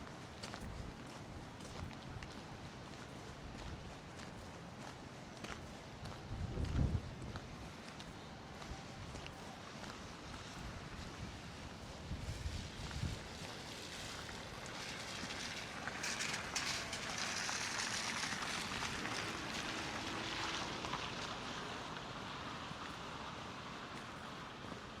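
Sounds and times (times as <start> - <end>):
vehicle tyres hissing past: 10.4 - 24.8.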